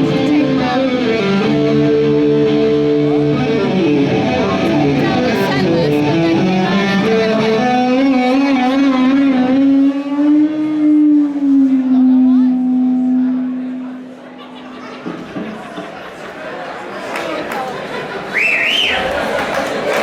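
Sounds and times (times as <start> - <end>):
electric guitar playing: 0.0 - 14.0.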